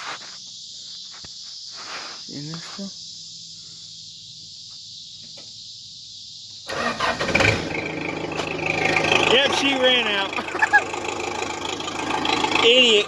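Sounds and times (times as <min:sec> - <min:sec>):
backhoe engine starting and running: 0:06.7 - 0:13.0.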